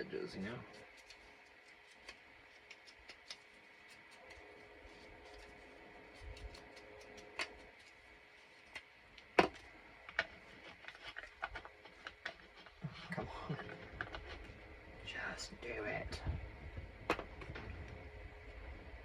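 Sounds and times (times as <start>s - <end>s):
paper and tools clicking: 0.7s - 13.1s.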